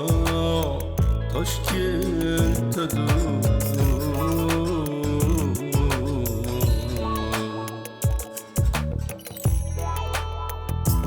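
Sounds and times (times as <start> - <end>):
song with beat and bass: 0.0 - 11.0.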